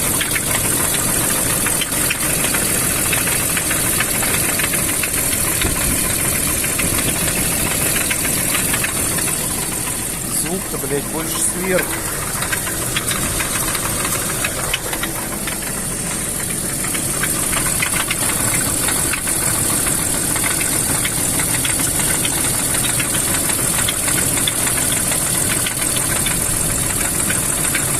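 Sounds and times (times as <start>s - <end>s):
car engine running: 0.0s - 27.9s
rapid ticking engine knock: 0.0s - 27.9s.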